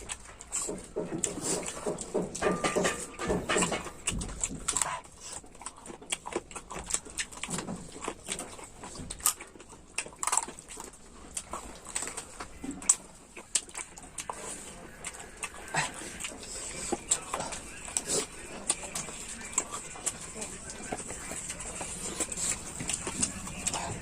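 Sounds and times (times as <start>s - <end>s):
person chewing food: 0.0s - 24.0s.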